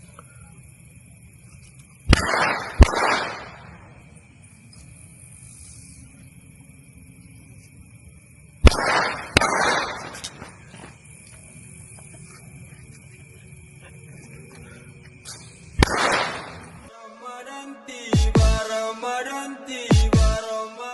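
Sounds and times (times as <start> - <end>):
firecracker bangs: 2.1 - 3.9, 8.6 - 10.6, 15.8 - 16.9.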